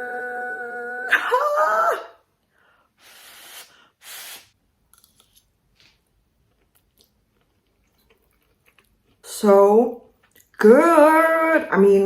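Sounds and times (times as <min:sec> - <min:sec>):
person chewing crunchy food: 0:05.0 - 0:09.3.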